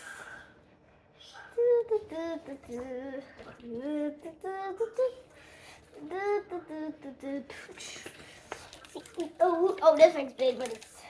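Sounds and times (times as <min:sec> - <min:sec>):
child singing: 0:01.4 - 0:05.3, 0:06.0 - 0:08.0.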